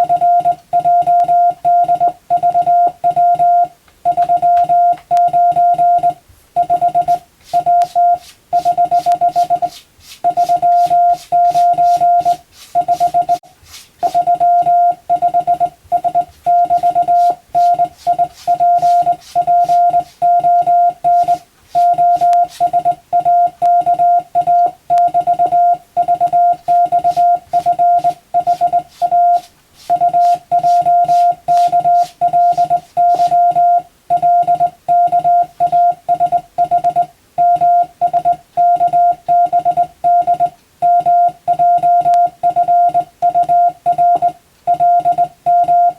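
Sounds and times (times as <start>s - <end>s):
morse code tone: 0.0s - 45.9s.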